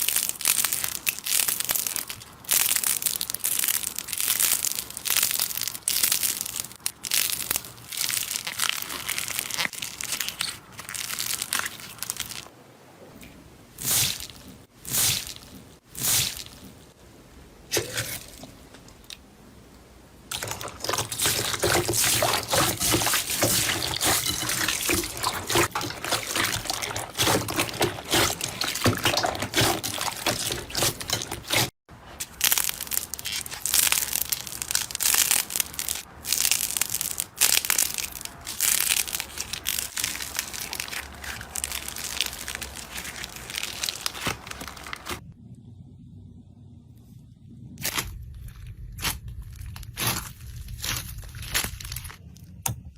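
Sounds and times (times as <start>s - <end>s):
slime squished by hand: 20.3s - 45.2s, 47.8s - 52.7s.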